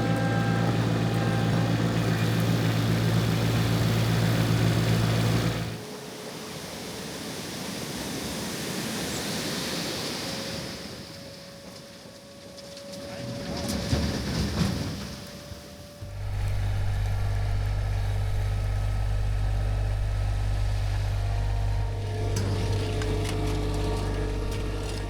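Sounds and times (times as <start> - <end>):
engine running: 0.0 - 6.0, 16.0 - 25.0
steady outdoor hiss: 16.0 - 25.0.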